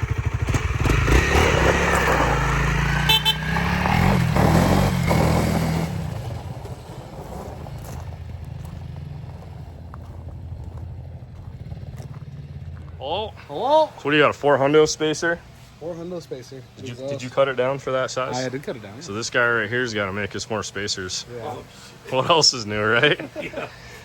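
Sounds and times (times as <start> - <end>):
motorcycle engine revving: 0.0 - 13.3.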